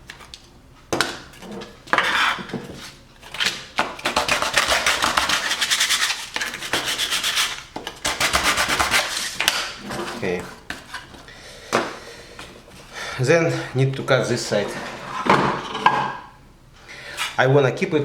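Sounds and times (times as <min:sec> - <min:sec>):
knocks and scrapes of handling: 0:00.1 - 0:08.0, 0:08.6 - 0:12.9, 0:14.5 - 0:16.3.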